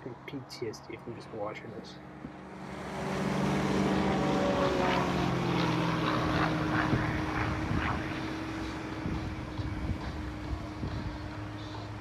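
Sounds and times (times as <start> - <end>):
propeller plane engine droning: 0.0 - 12.0.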